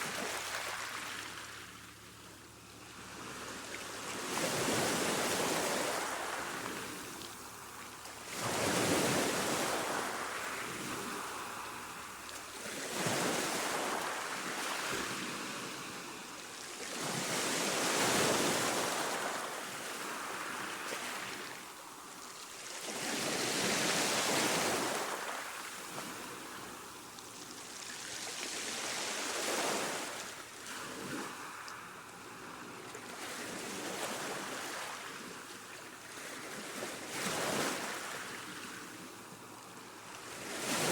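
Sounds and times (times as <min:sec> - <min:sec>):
ocean waves washing on shore: 0:02.8 - 0:22.1.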